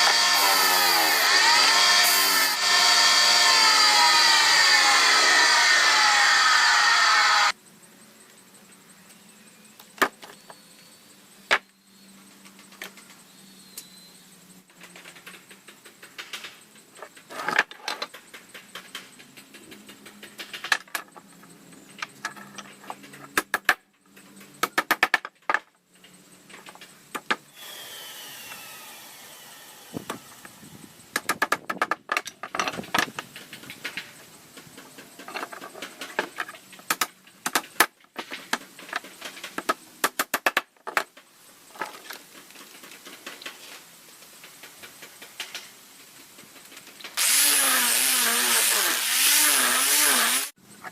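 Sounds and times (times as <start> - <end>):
hand tools and wood rattling: 0.0 - 7.6, 14.7 - 50.9
steady hiss: 41.1 - 50.9.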